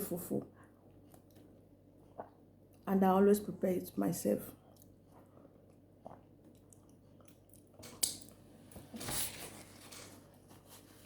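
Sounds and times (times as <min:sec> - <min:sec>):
quiet chewing: 0:00.6 - 0:02.9, 0:04.6 - 0:08.2.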